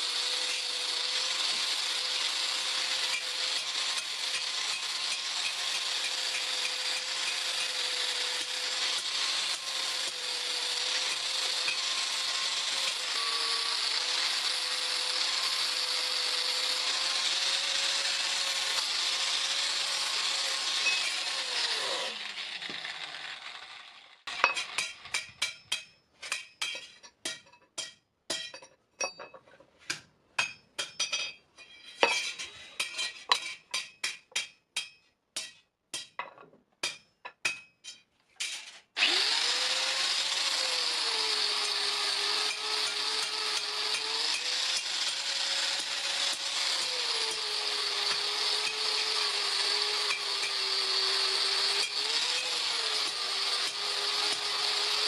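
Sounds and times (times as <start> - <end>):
power tool motor running: 0.0 - 24.2, 39.0 - 55.0.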